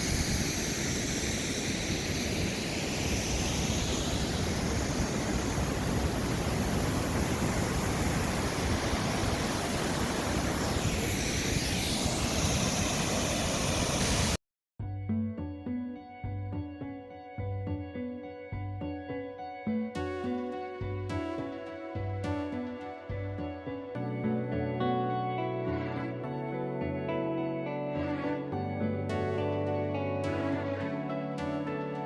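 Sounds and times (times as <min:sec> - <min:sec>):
waterfall roaring: 0:01.0 - 0:10.7
soft music: 0:14.8 - 0:32.0.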